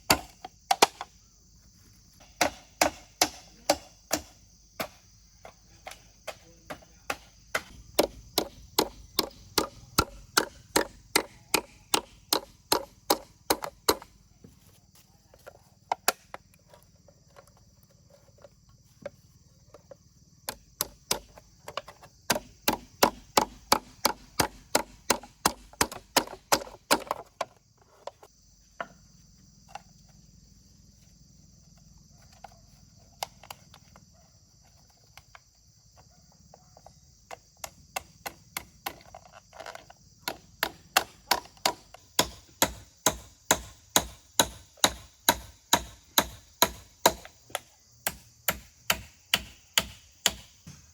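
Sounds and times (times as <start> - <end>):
hand tool striking wood: 0.0 - 1.1, 2.2 - 14.2, 15.9 - 16.4, 20.5 - 27.6, 37.3 - 39.1, 40.2 - 50.9.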